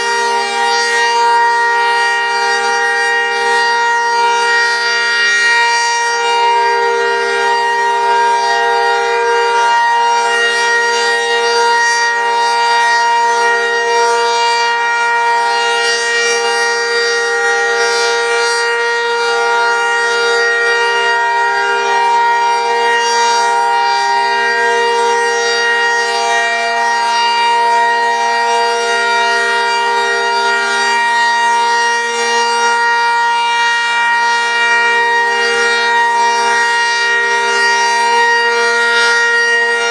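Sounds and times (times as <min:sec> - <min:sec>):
warning siren: 0:00.0 - 0:39.9.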